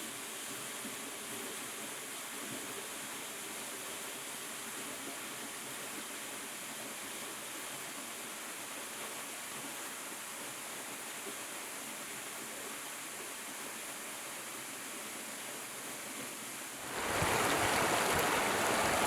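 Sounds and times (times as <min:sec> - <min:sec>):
stream of running water: 0:16.8 - 0:19.0.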